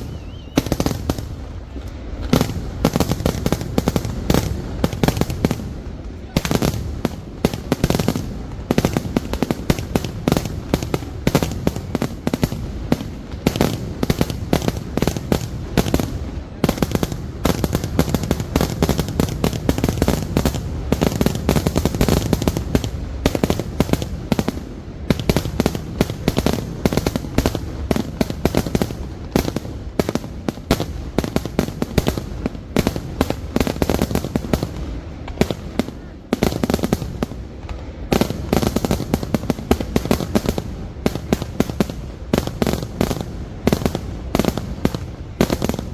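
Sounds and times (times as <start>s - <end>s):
rapid string of firework explosions: 0.0s - 45.9s.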